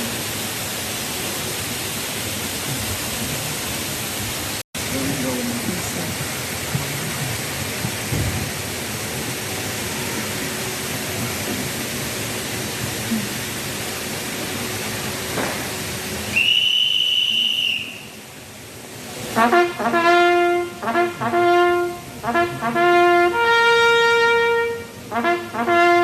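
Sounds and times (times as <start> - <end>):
street crowd noise: 4.8 - 18.1
high whistle blast: 16.3 - 18.2.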